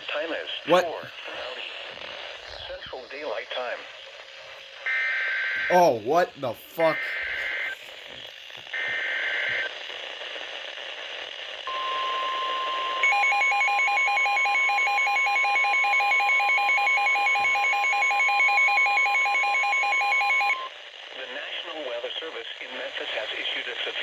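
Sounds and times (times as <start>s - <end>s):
pulsing two-pitch electronic alarm: 11.7s - 20.7s
steady warning alarm tone: 11.7s - 20.7s.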